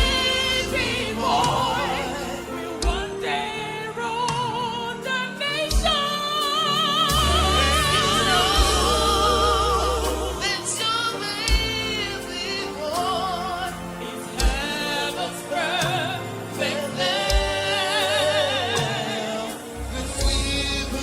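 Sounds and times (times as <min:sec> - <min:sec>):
gospel singing with vibrato: 0:00.0 - 0:21.0
deep bass: 0:07.2 - 0:10.5, 0:19.8 - 0:21.0.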